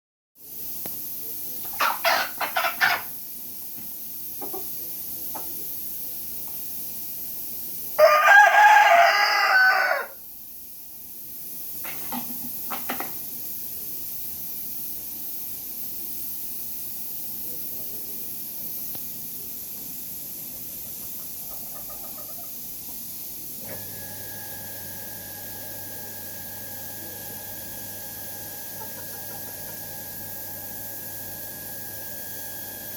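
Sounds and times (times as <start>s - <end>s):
chicken clucks: 1.6s - 3.2s, 4.4s - 5.5s, 20.8s - 23.0s, 28.6s - 30.1s
rooster crowing: 8.0s - 10.2s
faint hum with high tone: 22.4s - 32.9s.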